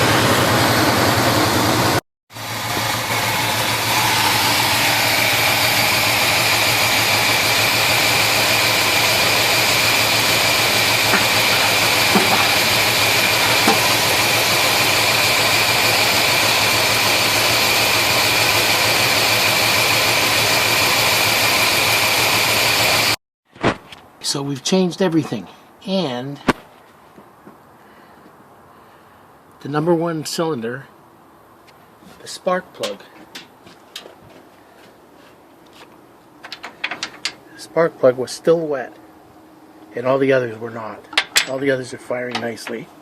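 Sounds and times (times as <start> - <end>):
misfiring car engine running: 0.0 - 23.2.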